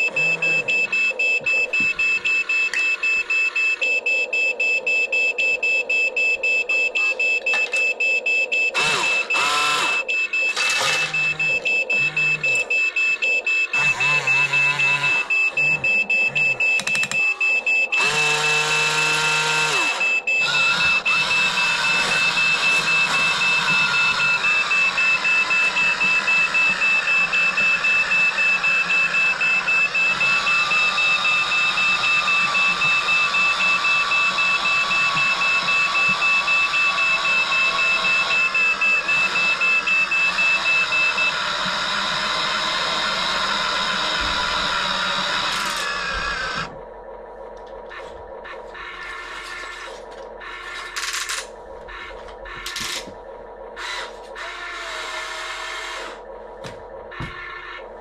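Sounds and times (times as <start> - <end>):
rapid high-pitched electronic beeps: 0.0 - 41.4.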